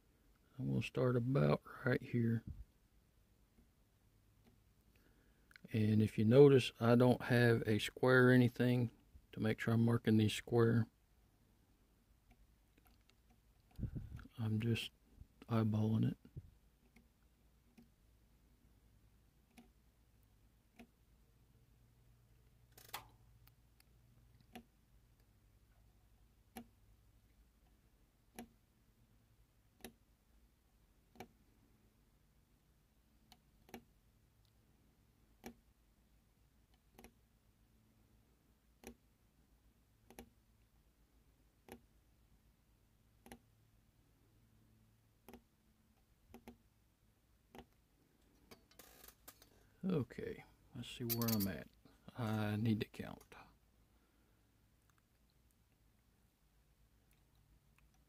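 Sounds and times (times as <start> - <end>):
metal scribe clicking on metal: 51.0 - 51.6.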